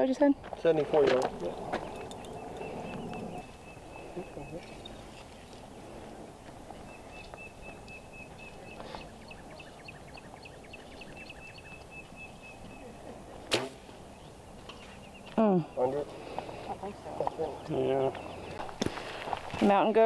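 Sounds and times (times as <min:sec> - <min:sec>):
faint high chirping: 0:01.4 - 0:05.7, 0:06.7 - 0:13.3
bowstring release snap: 0:13.5 - 0:13.8.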